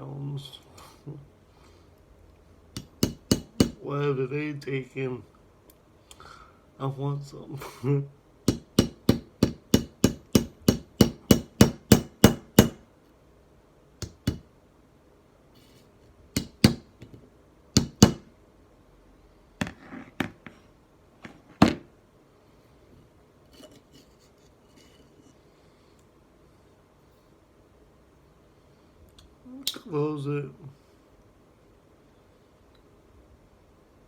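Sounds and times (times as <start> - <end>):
hammer tapping on metal: 2.8 - 3.8, 8.5 - 12.8, 14.0 - 14.4, 16.4 - 17.1, 17.8 - 18.2.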